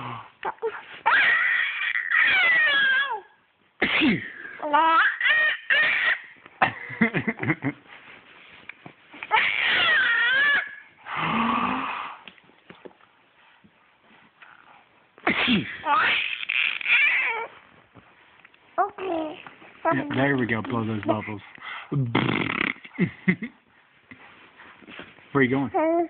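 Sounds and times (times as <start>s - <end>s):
baby squealing and laughing: 0.5s - 3.3s, 4.6s - 6.4s, 9.2s - 10.9s, 15.8s - 17.6s.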